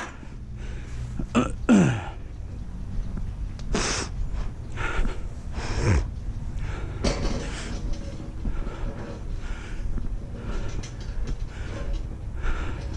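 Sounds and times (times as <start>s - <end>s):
man breathing heavily: 0.0s - 2.5s, 3.7s - 12.9s
man grunting: 1.3s - 2.2s.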